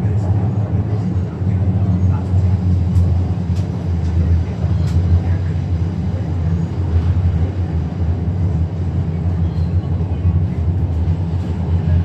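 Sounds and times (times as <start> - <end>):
train rumbling from inside: 0.0 - 12.0.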